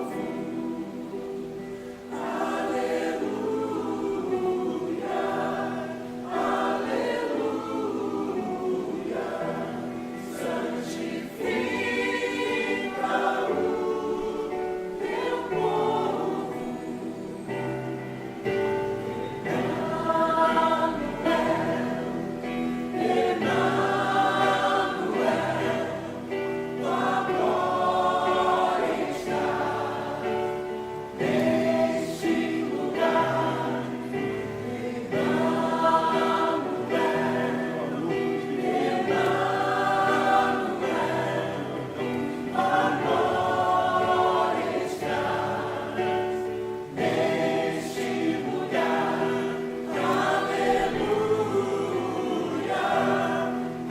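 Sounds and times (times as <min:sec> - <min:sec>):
choir singing a hymn: 0:00.0 - 0:53.9.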